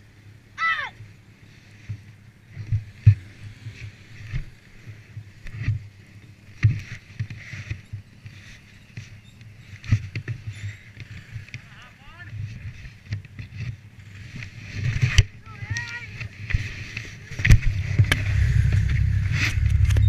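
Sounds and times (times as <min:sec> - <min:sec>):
atv thumping over rough ground: 0:14.8 - 0:20.0.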